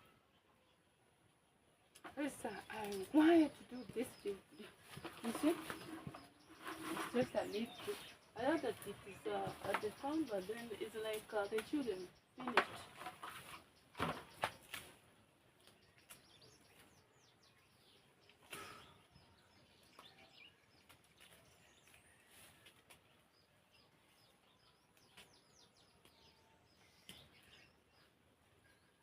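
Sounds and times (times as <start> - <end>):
faint birds chirping: 0.0 - 29.0
soft rustles or knocks: 4.6 - 10.3.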